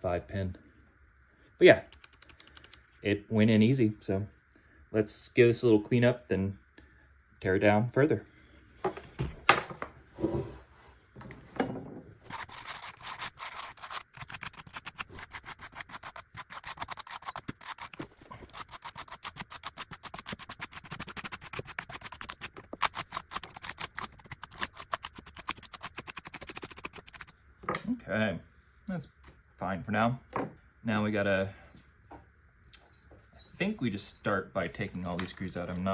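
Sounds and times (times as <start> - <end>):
scrubbing keyboard: 12.3 - 27.3.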